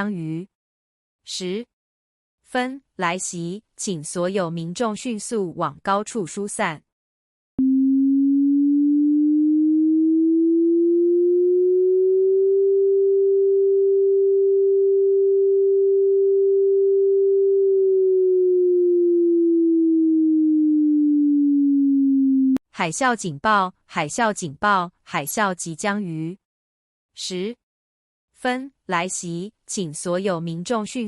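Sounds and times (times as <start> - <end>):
warning siren tone: 7.6 - 22.6.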